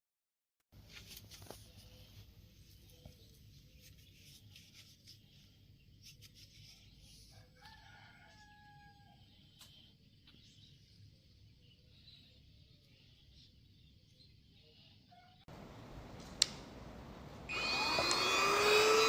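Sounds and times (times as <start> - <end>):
distant rooster crowing: 7.3 - 9.4.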